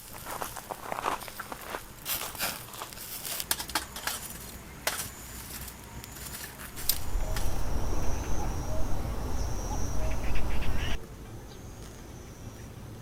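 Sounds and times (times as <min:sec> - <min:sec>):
crinkling and rustling: 0:00.0 - 0:07.6.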